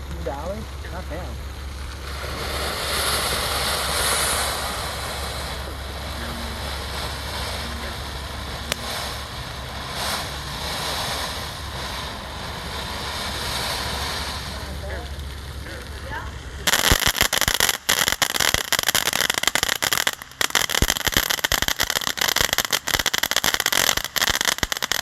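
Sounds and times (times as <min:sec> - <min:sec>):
fountain firework hissing: 0:00.0 - 0:25.0
sharp crack: 0:00.0 - 0:25.0.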